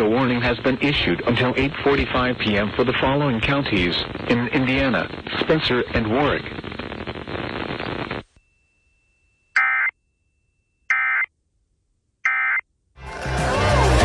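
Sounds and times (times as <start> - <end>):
music: 13.0 - 14.0.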